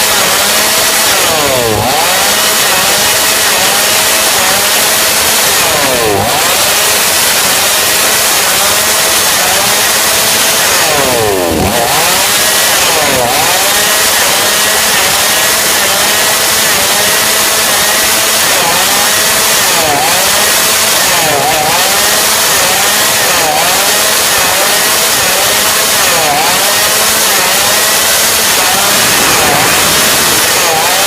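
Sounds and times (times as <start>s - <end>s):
chainsaw running: 0.0s - 31.0s.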